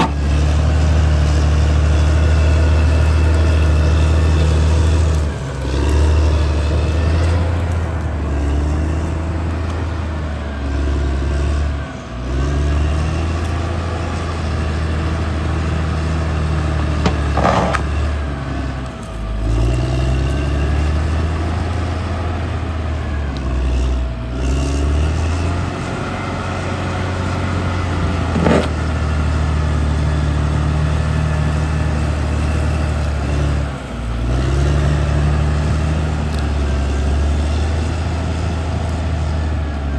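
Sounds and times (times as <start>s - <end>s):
bulldozer diesel engine running hard: 0.0s - 39.9s
sharp knocks: 17.0s - 18.0s.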